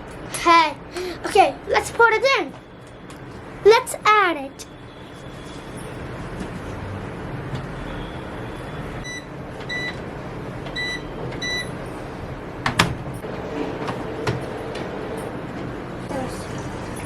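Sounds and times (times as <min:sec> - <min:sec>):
washing machine button beeps: 0:09.0 - 0:10.0, 0:10.7 - 0:11.8.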